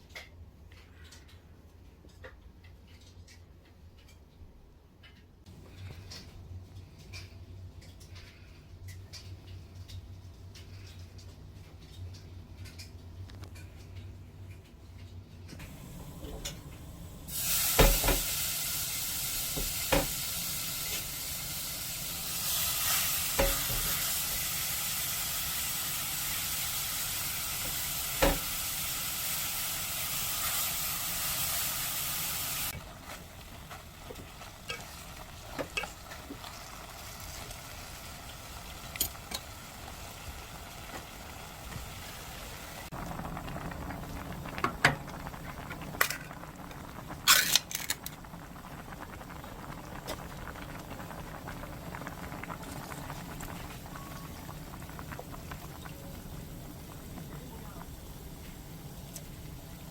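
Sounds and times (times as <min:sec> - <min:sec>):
food sizzling in a pan: 0:17.0 - 0:47.6.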